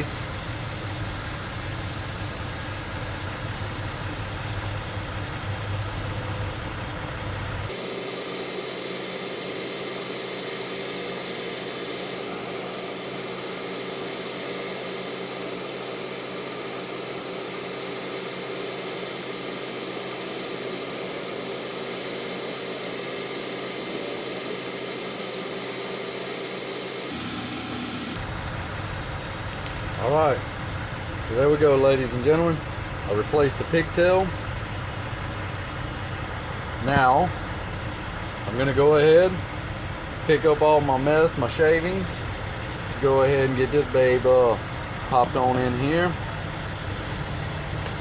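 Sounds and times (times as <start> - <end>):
low engine hum: 0.0 - 8.2, 27.1 - 48.0.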